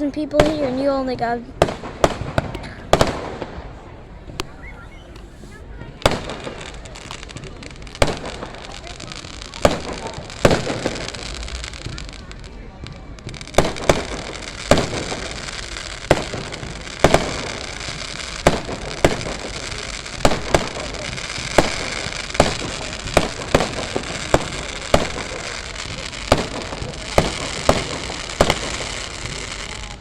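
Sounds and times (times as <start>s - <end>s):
continuous fireworks crackle: 0.0s - 30.0s
fireworks bangs: 0.0s - 30.0s.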